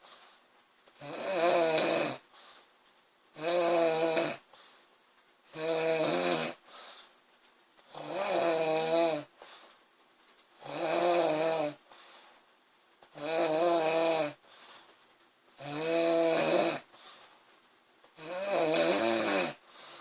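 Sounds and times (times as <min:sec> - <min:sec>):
faint breathing: 0:00.0 - 0:00.5, 0:02.2 - 0:03.0, 0:04.4 - 0:05.0, 0:06.5 - 0:08.1, 0:09.3 - 0:10.7, 0:11.7 - 0:13.2, 0:14.2 - 0:15.2, 0:16.8 - 0:17.7, 0:19.5 - 0:20.0
woman snoring loudly: 0:01.0 - 0:02.2, 0:03.4 - 0:04.4, 0:05.5 - 0:06.6, 0:07.9 - 0:09.3, 0:10.6 - 0:11.8, 0:13.2 - 0:14.4, 0:15.6 - 0:16.9, 0:18.2 - 0:19.6.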